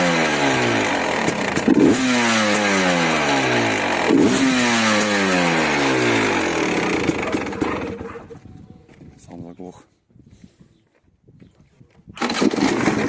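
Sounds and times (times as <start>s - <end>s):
motorcycle engine revving: 0.0s - 8.4s, 12.2s - 13.0s.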